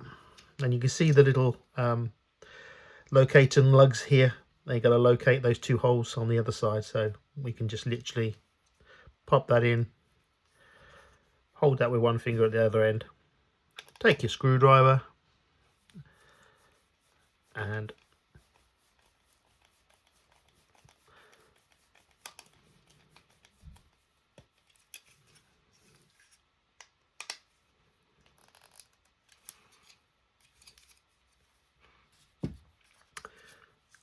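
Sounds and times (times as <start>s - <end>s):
faint clicks and scrapes: 15.6s - 34.0s.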